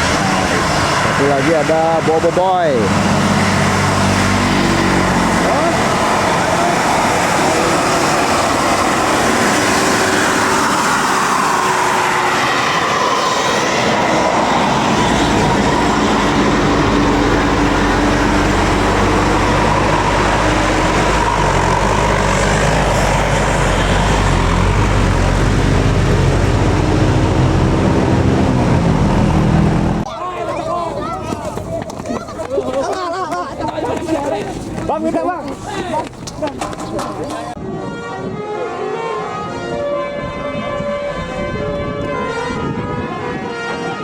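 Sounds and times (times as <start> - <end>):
diesel engine rumble: 0.0 - 37.6
musical air horns gliding tones: 37.6 - 44.0.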